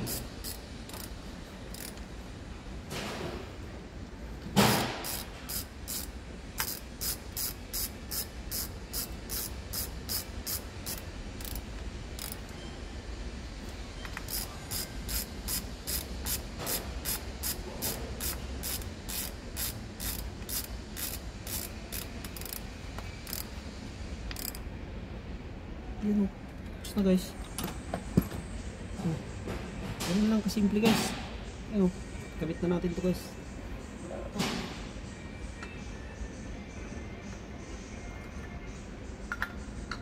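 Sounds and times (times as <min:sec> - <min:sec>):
ratchet wrench clicking: 0:00.0 - 0:02.1, 0:04.7 - 0:12.5, 0:14.2 - 0:22.6, 0:23.2 - 0:23.5, 0:24.3 - 0:24.6.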